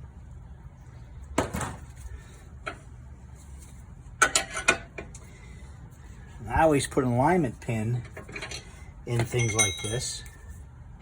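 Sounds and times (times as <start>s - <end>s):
metal knocks and clinks: 8.2s - 10.3s.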